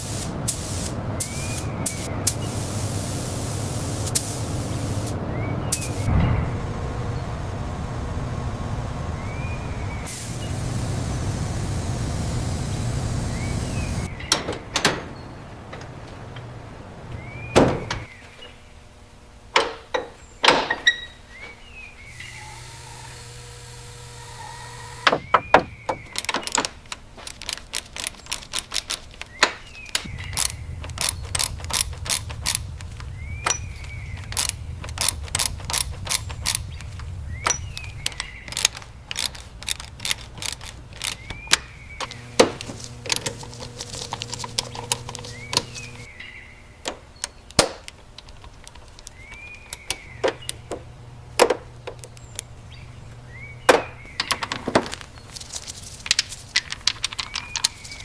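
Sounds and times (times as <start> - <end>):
low hum: 0.0 - 14.2, 21.3 - 25.8, 29.8 - 46.8, 48.2 - 54.2
rising and falling chirp: 4.7 - 14.3, 29.8 - 38.6.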